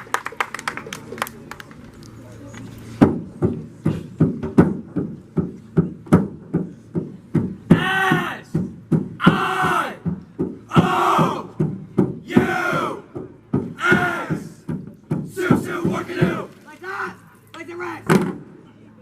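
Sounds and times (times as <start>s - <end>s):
sharp rhythmic knocks: 3.0s - 16.5s
group of voices shouting: 7.7s - 8.5s, 9.2s - 10.0s, 10.7s - 11.6s, 12.3s - 13.1s, 13.8s - 14.6s, 15.3s - 17.2s.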